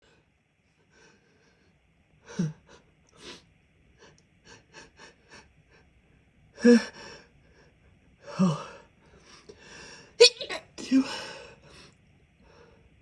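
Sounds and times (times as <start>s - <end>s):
stifled sneeze: 10.2s - 11.4s.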